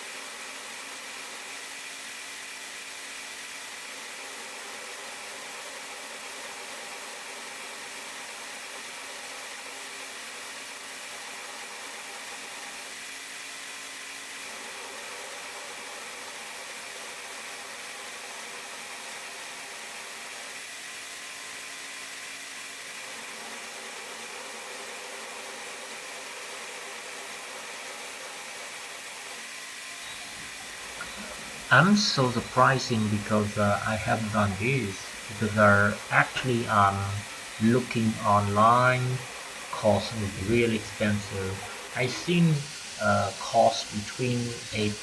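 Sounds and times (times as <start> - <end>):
machine whirring hiss: 29.4 - 45.0.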